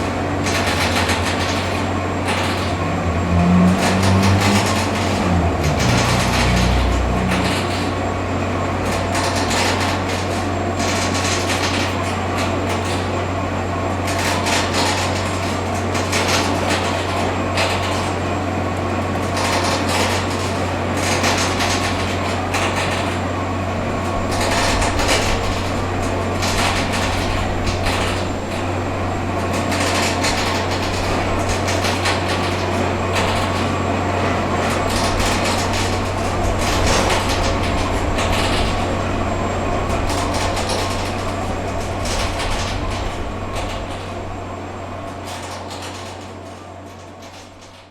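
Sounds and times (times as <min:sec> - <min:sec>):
heavy machinery drone: 0:00.0 - 0:10.8, 0:20.8 - 0:45.5.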